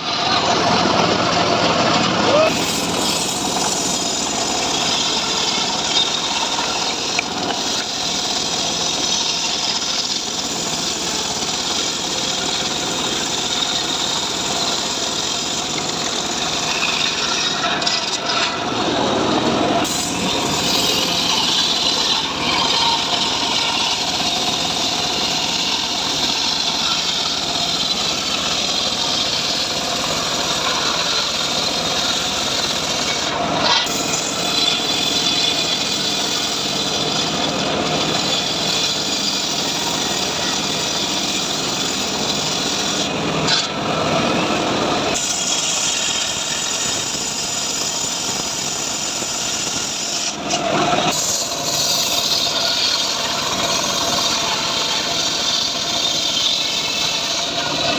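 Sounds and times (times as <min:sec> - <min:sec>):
sawmill blade cutting log: 0:00.0 - 0:57.9.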